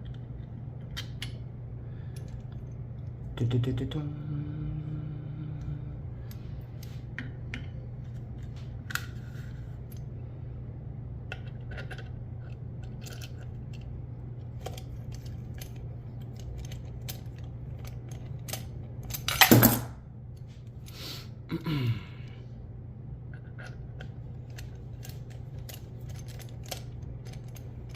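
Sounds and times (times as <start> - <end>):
steady low hum: 0.0 - 27.9.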